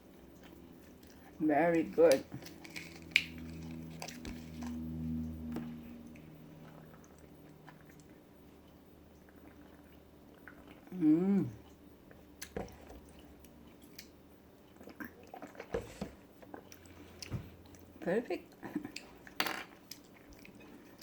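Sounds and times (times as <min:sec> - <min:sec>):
person humming mmm: 0:10.9 - 0:11.6.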